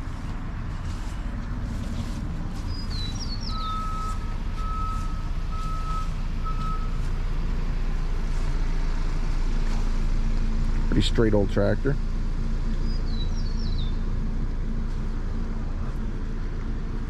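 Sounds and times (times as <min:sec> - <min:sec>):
engine rumbling: 0:00.0 - 0:17.0
reverse alarm beeping: 0:03.5 - 0:07.1.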